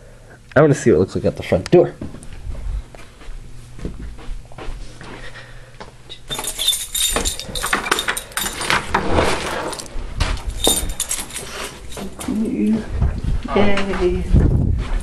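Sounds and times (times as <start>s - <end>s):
keys jingling: 6.1s - 8.9s, 9.5s - 12.7s.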